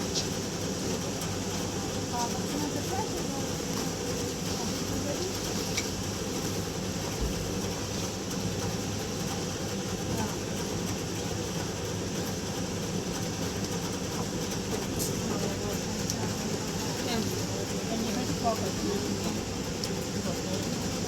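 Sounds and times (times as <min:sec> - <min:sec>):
faint voices: 0:00.9 - 0:06.0, 0:14.7 - 0:21.0.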